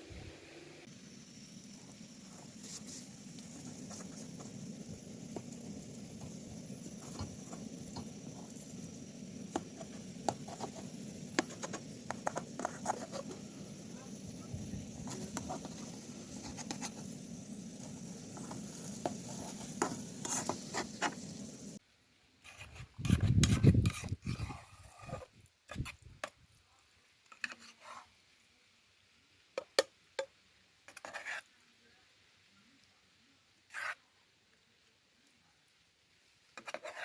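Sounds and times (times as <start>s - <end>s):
food sizzling in a pan: 0.1s - 21.8s
utensil scraping a pan: 2.3s - 21.8s, 22.4s - 26.0s, 33.7s - 34.0s, 36.6s - 37.0s.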